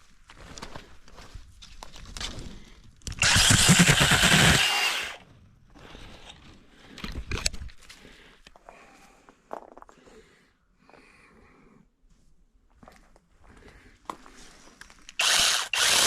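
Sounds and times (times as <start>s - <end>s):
mini chainsaw cutting saplings: 3.1s - 5.2s, 15.1s - 16.0s.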